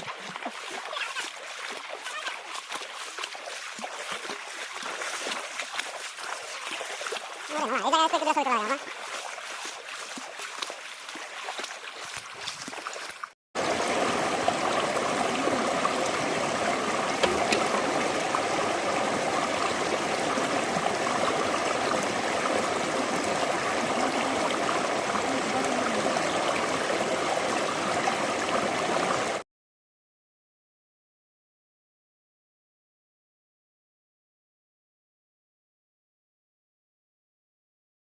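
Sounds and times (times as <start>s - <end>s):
rushing water: 0.0s - 29.4s
water trickling with splashes: 0.0s - 29.4s.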